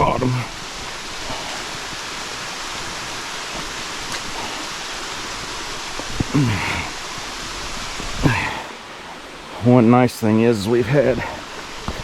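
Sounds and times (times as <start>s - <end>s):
waterfall rushing: 0.0s - 12.0s
person grunting: 6.3s - 7.0s, 8.2s - 8.7s.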